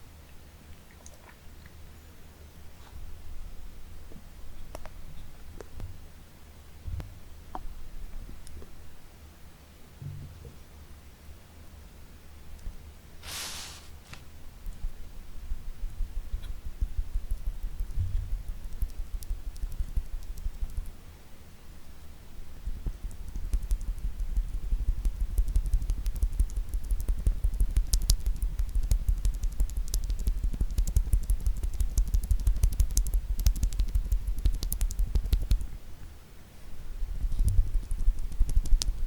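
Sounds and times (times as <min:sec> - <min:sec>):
fingertips and nails tapping: 0:17.2 - 0:20.9, 0:23.0 - 0:35.7, 0:37.2 - 0:39.0.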